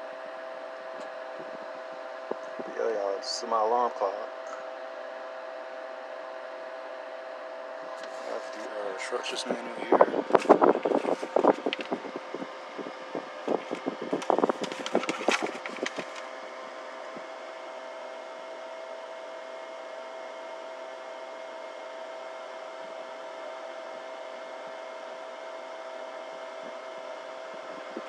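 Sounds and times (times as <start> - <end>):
background hum: 0.0 - 28.0
paper crackling and rustling: 10.3 - 12.2, 13.4 - 16.3.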